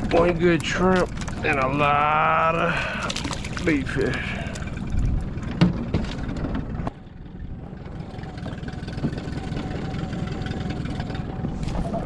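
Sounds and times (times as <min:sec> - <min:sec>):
boat motor idling: 0:00.0 - 0:12.0
sharp knocks and clatters: 0:05.4 - 0:07.0.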